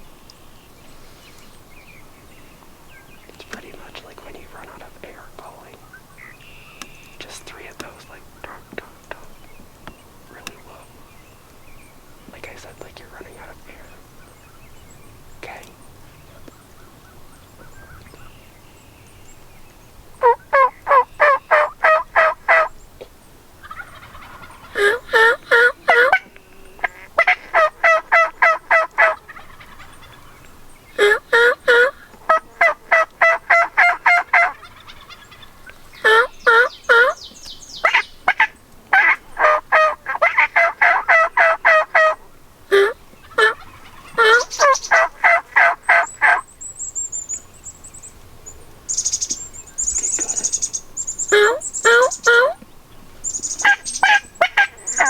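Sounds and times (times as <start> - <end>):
turkey yelps: 20.2 - 22.7, 23.6 - 30.4, 31.0 - 37.2, 37.8 - 46.4, 50.1 - 52.6, 53.3 - 55.0.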